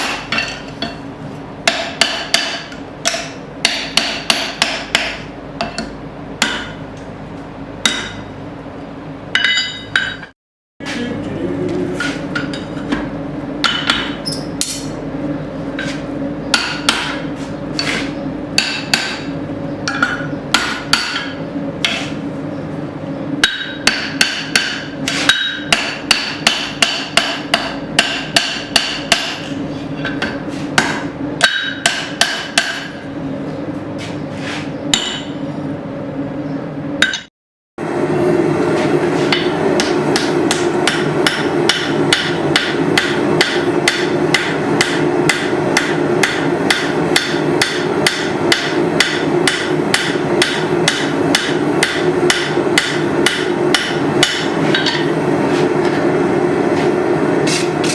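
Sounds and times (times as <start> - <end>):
hammer striking steel on anvil: 0.0 - 1.0, 1.6 - 6.8, 7.8 - 8.3, 9.3 - 10.3, 12.0 - 15.0, 15.8 - 22.2, 23.4 - 33.0, 34.9 - 35.4, 37.0 - 37.3, 39.2 - 56.1, 56.8 - 57.9
steady hum: 0.0 - 57.9.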